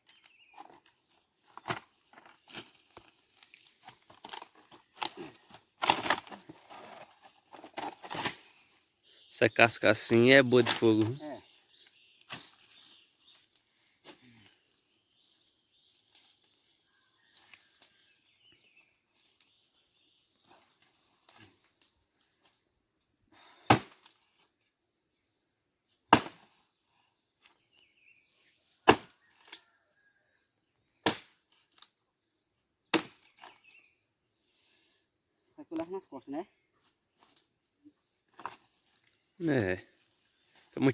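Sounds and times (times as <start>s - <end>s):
wood chopping knocks: 26.1s - 26.4s.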